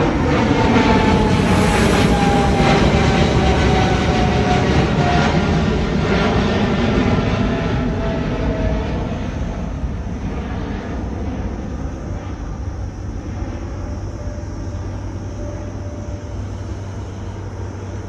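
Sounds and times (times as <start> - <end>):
jet engines passing by: 0.0 - 18.0.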